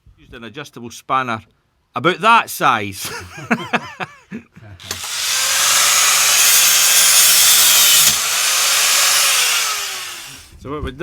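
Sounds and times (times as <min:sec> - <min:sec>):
angle grinder cutting metal: 0:04.8 - 0:10.5.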